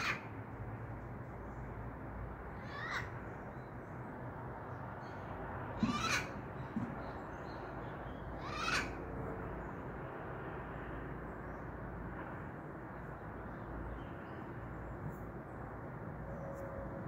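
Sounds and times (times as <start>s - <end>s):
parrot squawk: 0.0s - 0.3s, 2.6s - 3.1s, 5.8s - 6.4s, 8.4s - 9.0s.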